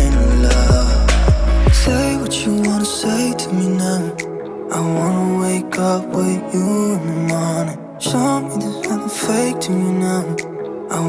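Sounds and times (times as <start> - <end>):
deep sliding bass hits: 0.0 - 2.1
sustained melodic notes: 0.0 - 11.0.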